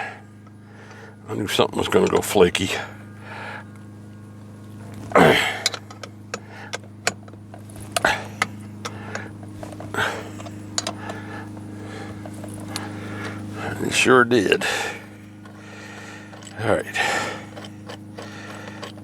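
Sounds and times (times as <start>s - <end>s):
steady low hum: 0.0s - 19.0s
metal hand tools clinking: 5.2s - 19.0s.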